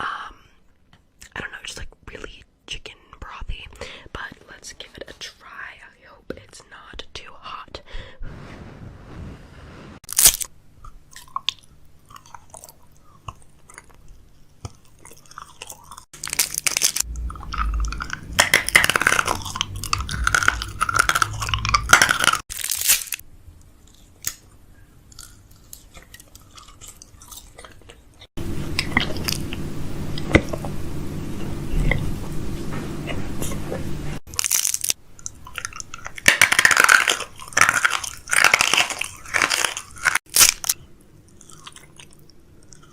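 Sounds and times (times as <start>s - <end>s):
person chewing crunchy food: 10.0s - 29.6s, 34.2s - 42.9s.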